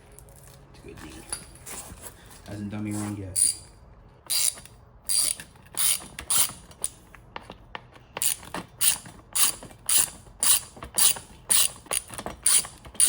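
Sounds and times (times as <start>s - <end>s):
ratchet wrench clicking: 3.4s - 3.7s, 4.3s - 7.0s, 8.2s - 13.0s.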